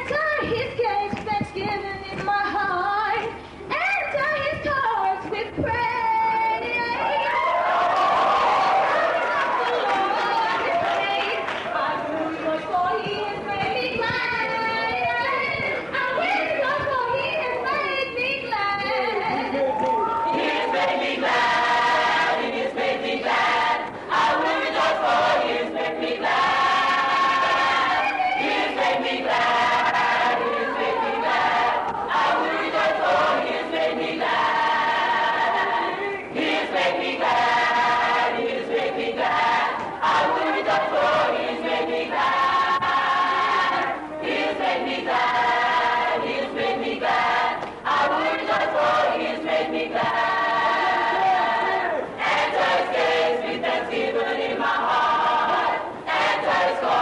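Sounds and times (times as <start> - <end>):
choir singing long notes: 20.3 - 57.0.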